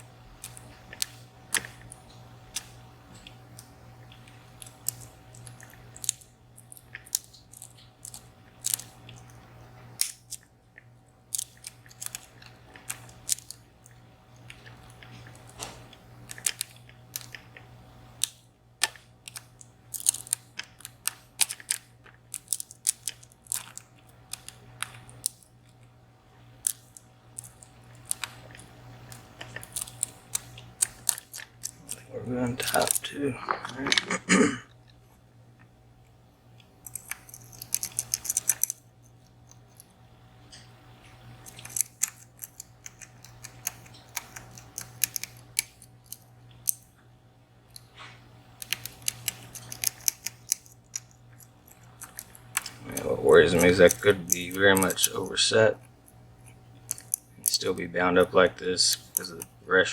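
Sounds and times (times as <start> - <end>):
steady low hum: 0.0 - 59.9
lock pick clicking and scraping: 36.8 - 38.8, 48.6 - 52.8, 56.4 - 57.2.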